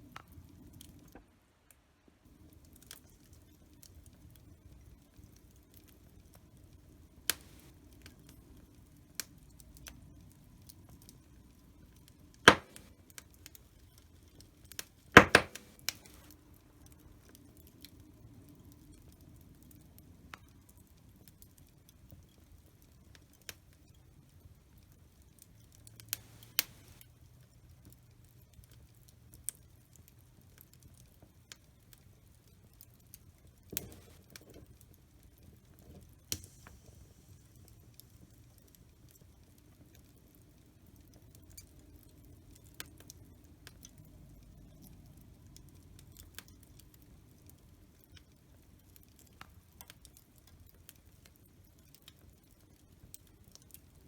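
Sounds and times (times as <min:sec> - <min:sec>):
wood fire crackling: 0:00.0 - 0:01.2, 0:02.3 - 0:54.0
faint low hiss: 0:00.0 - 0:29.6, 0:31.2 - 0:54.0
sharp pops from fire: 0:07.3 - 0:11.2, 0:12.1 - 0:18.0, 0:25.4 - 0:27.1, 0:32.6 - 0:40.4.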